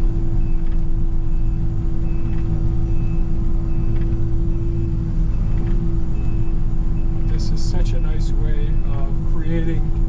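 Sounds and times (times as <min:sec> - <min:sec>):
constant hum: 0:00.0 - 0:10.0
excavator engine rumbling: 0:00.0 - 0:10.0.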